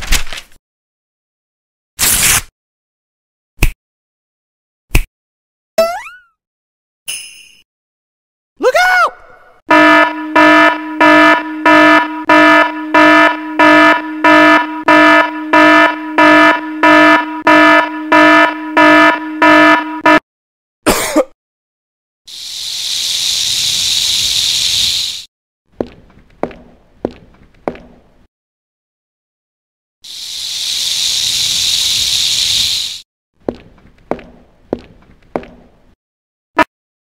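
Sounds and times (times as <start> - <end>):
electronic alarm buzzer pulsing: 9.7 - 20.2
burst of hiss: 22.3 - 25.3, 30.1 - 33.0.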